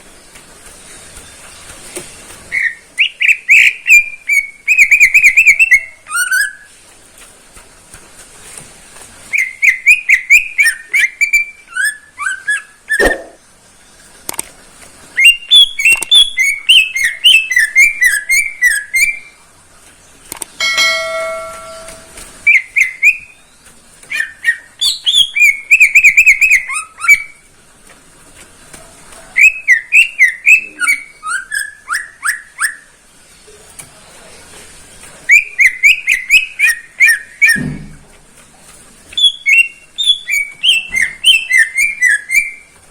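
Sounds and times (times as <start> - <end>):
bird warbling whistles: 2.5 - 6.6
steady held tone: 20.6 - 22.2.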